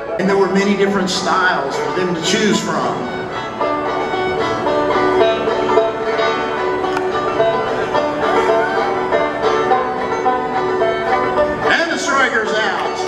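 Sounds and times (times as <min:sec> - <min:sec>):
bluegrass music with banjo: 0:00.0 - 0:13.0.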